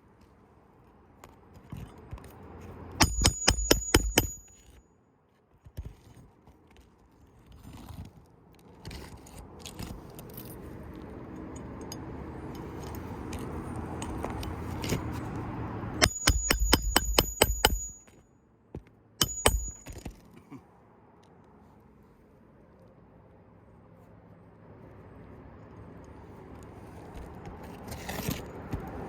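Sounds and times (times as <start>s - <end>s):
sharp metallic clinks: 3.0s - 4.8s, 11.5s - 13.0s, 16.0s - 18.2s, 19.2s - 20.2s.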